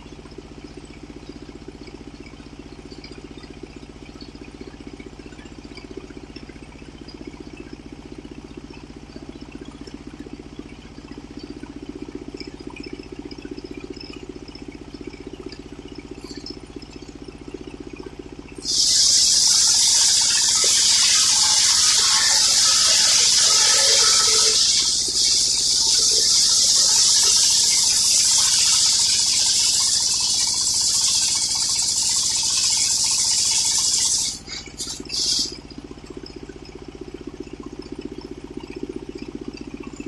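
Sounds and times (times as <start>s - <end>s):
saw engine idling: 16.0s - 37.0s
saw blade cutting log: 18.6s - 35.6s.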